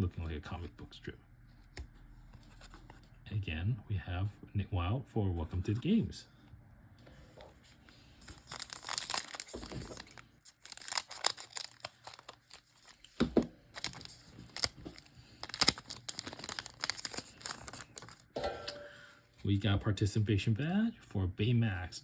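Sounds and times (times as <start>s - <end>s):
foil pack crinkling: 8.2s - 18.8s.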